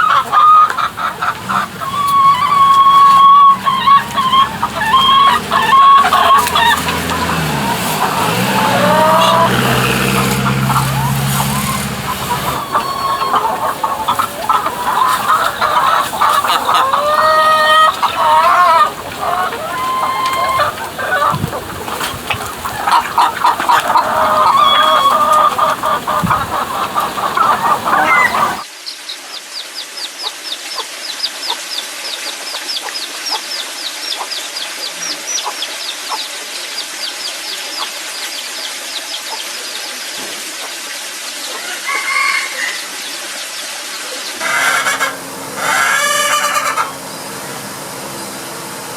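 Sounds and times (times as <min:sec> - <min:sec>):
chickens clucking: 0:00.0 - 0:28.7, 0:41.4 - 0:48.9.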